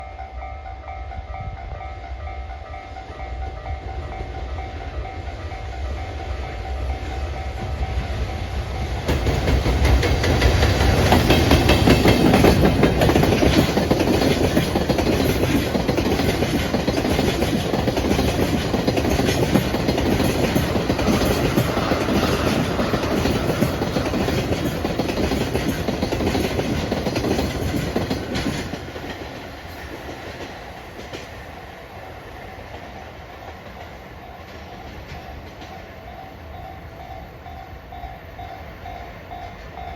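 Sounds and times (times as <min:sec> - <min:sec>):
electric locomotive passing: 0:00.0 - 0:39.9
wagon wheels clacking over rail joints: 0:08.8 - 0:31.3.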